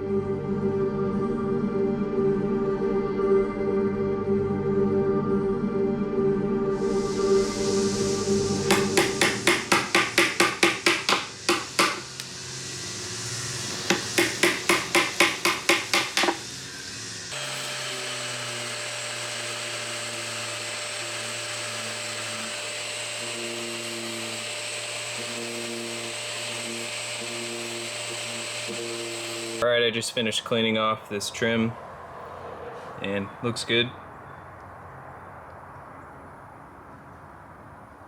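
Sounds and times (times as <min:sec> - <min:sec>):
power tool humming and whining: 0:06.8 - 0:29.6
fast even knocking: 0:08.7 - 0:12.1, 0:13.9 - 0:16.4.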